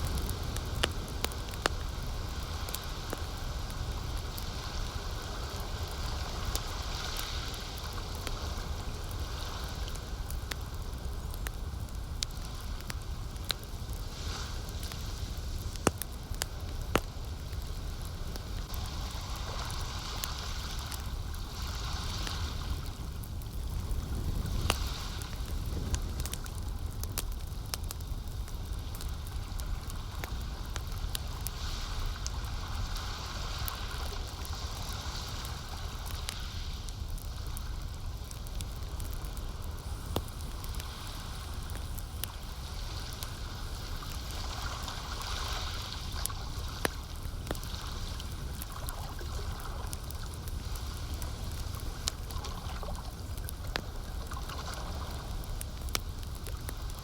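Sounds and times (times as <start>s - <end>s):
campfire crackling and popping: 0.0s - 57.0s
water lapping and gurgling: 40.7s - 56.9s.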